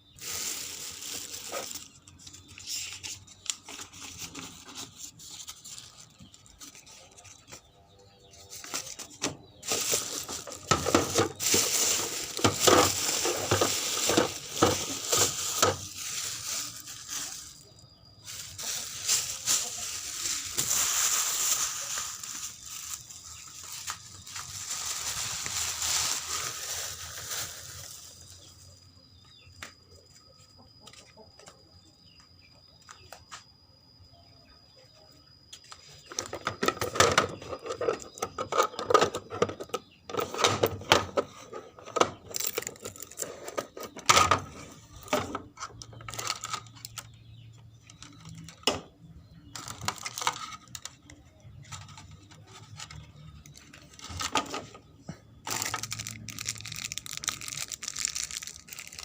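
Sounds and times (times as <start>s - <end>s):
rustling and scraping: 0.1s - 28.9s.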